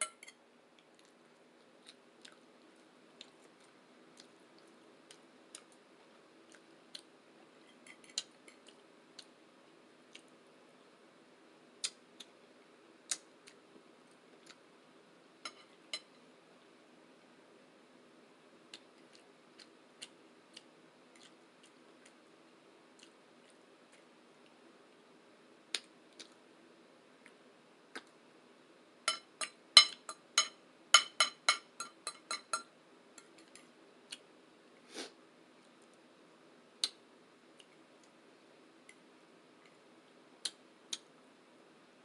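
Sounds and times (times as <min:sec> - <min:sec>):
faint low hum: 0:00.0 - 0:42.0
wet mouth clicks and chewing: 0:18.7 - 0:22.2.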